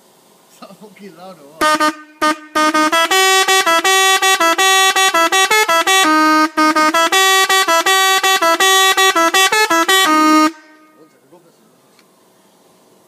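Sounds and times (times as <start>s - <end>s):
musical air horn: 1.6s - 11.1s.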